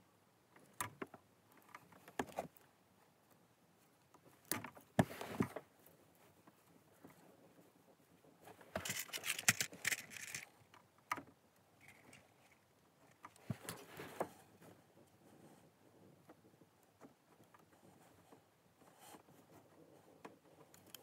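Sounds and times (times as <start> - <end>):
wire rustling: 8.5 - 10.6, 11.8 - 14.4
sharp plastic clicks: 8.8 - 10.5.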